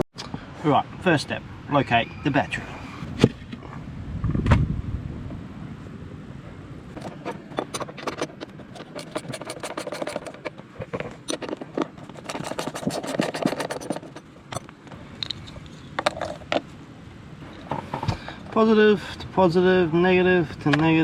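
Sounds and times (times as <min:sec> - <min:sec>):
clicks and scrapes of small parts: 0:07.0 - 0:16.7.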